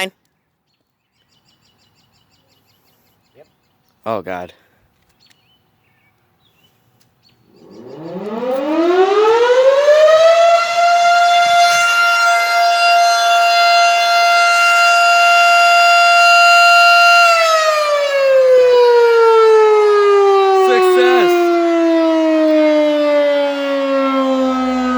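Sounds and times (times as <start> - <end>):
warning siren wailing: 7.4 - 24.9.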